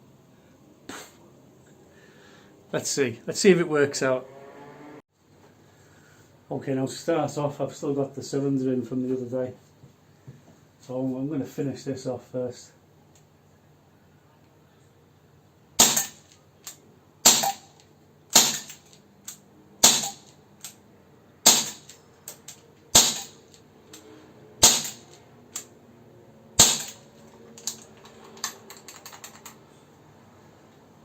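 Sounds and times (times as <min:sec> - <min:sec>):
air pistol shots: 0:15.8 - 0:16.3, 0:17.2 - 0:18.8, 0:19.8 - 0:20.3, 0:21.4 - 0:22.0, 0:22.9 - 0:23.4, 0:24.6 - 0:25.2, 0:26.6 - 0:27.1.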